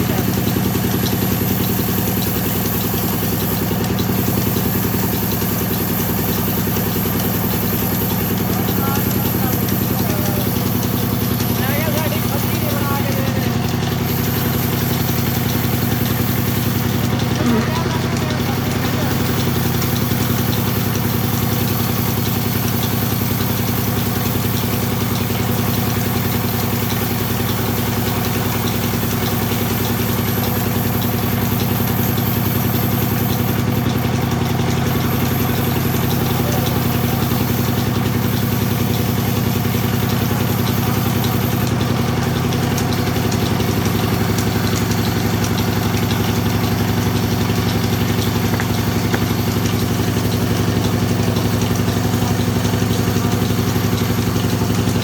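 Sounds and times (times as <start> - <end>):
sawmill machine humming: 0.0 - 55.0.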